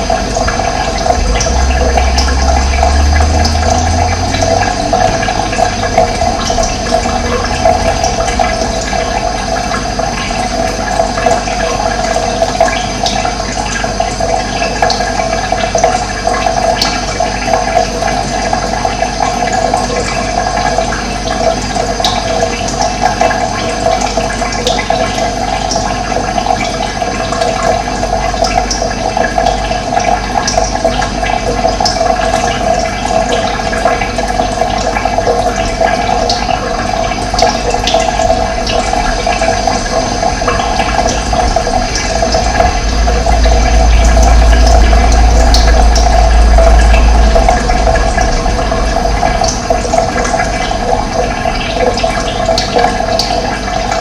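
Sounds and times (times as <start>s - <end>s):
low rumble: 0.0s - 13.2s, 32.7s - 54.0s
running water rushing: 0.0s - 54.0s.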